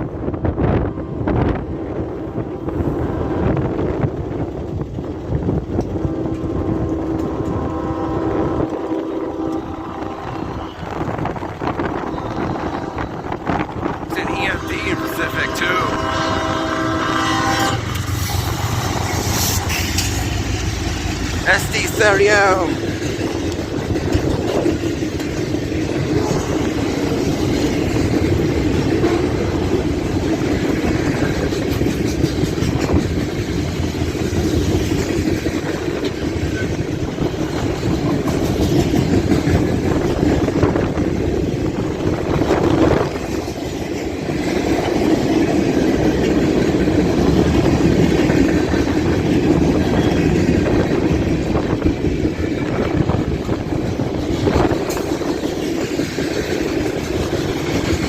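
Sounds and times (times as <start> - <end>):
freight train rumbling past: 0.0 - 58.0
wind buffeting microphone: 0.0 - 58.0
wheels clacking over rail joints: 16.6 - 58.0.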